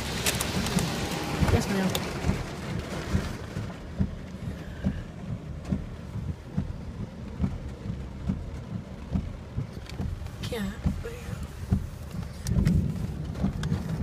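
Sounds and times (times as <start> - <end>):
heavy rain on a car: 0.0 - 14.0
raindrops thumping on car: 0.0 - 14.0.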